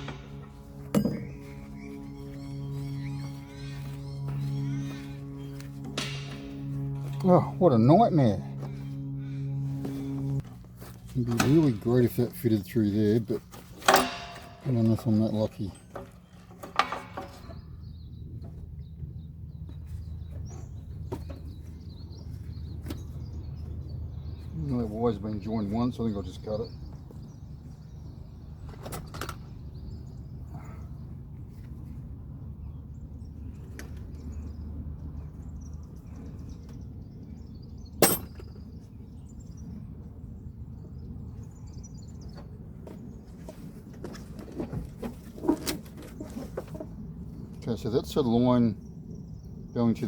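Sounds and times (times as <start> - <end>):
low rumble: 0.0 - 12.1
small birds chirping: 0.0 - 13.7, 17.3 - 43.7
steady low hum: 0.0 - 49.8
faint bird chirps: 1.0 - 5.8.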